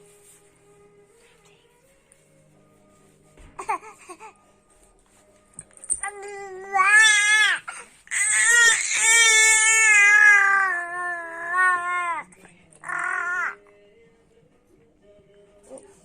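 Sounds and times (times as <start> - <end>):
baby crying: 6.0 - 13.6.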